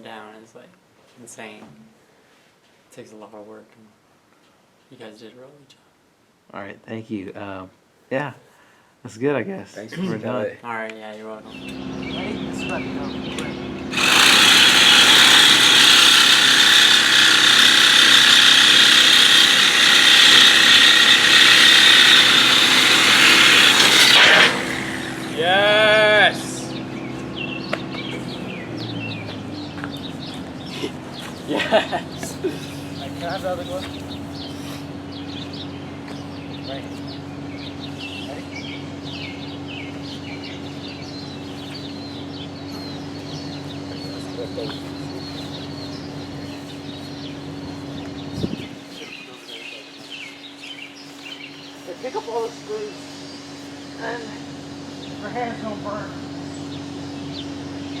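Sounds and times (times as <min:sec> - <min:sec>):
small birds chirping: 0:11.0 - 0:58.0
steady low hum: 0:11.2 - 0:49.0
power tool whining: 0:13.3 - 0:30.0.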